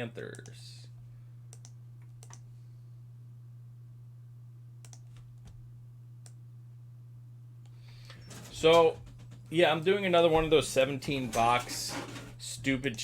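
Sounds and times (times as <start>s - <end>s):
low electrical hum: 0.0s - 13.0s
computer keyboard typing clicks: 1.5s - 2.4s, 4.8s - 5.3s.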